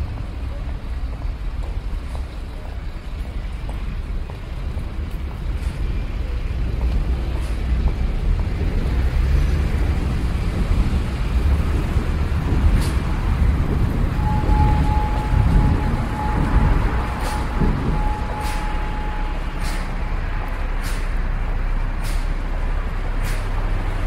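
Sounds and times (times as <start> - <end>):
low rumble of passing cars: 0.0 - 24.0
steady high tone: 14.1 - 20.0.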